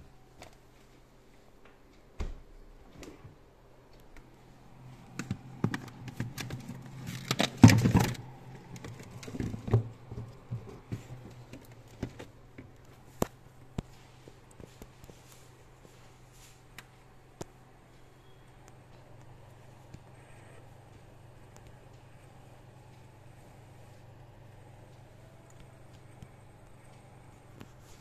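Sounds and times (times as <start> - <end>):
handling clicks and knocks: 4.0 - 15.4.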